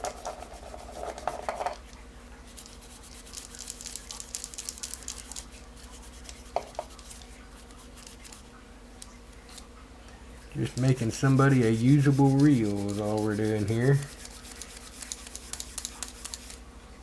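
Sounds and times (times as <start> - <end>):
scuffing pad rubbing: 11.3 - 15.6.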